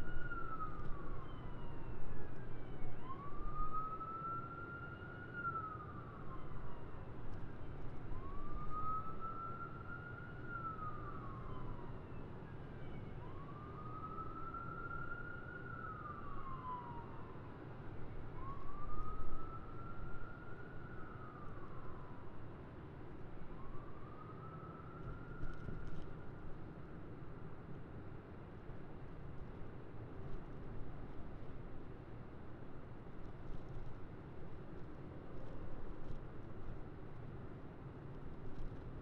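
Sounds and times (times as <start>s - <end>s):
emergency vehicle siren wailing: 0.0s - 7.2s, 8.1s - 17.6s, 18.3s - 22.4s, 23.5s - 25.9s.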